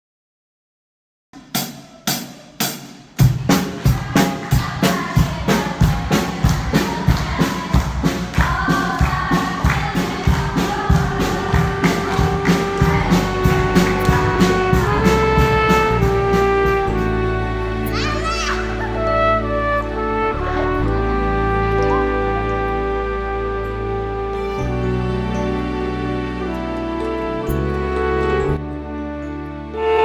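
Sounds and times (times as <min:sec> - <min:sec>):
steady drum beat: 0:01.4 - 0:17.2
sustained chords: 0:07.7 - 0:24.1.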